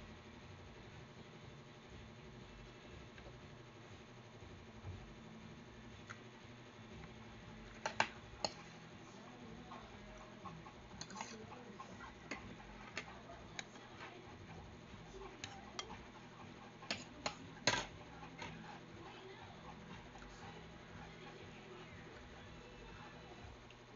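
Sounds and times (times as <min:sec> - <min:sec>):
clicks and taps of eating: 0:07.8 - 0:08.6.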